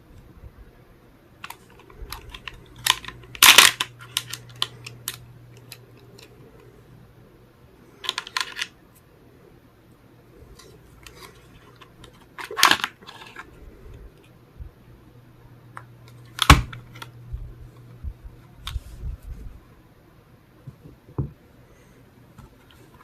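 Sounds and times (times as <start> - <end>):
gun parts clicking and clacking: 1.4 - 6.4, 8.0 - 8.7, 11.0 - 13.5.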